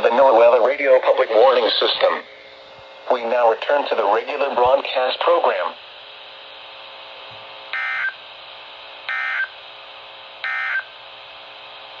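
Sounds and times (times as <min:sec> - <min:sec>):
radio reception hiss: 0:00.0 - 0:06.6.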